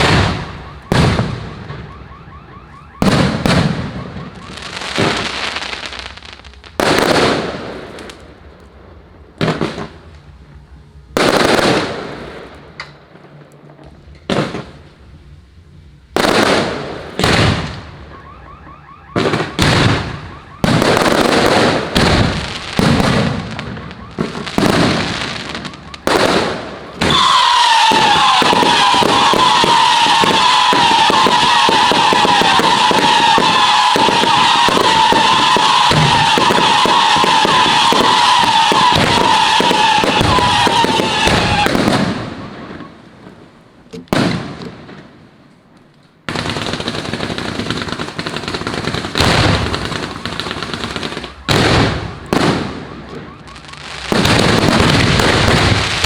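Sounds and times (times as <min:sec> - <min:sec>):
fireworks rapid crackling: 0:00.0 - 0:01.9, 0:03.0 - 0:08.5, 0:09.3 - 0:10.4, 0:11.1 - 0:13.4, 0:16.1 - 0:18.4, 0:19.2 - 0:43.4, 0:46.3 - 0:56.0
firework blasts: 0:00.0 - 0:45.6, 0:46.2 - 0:56.0
high whine: 0:08.1 - 0:20.6.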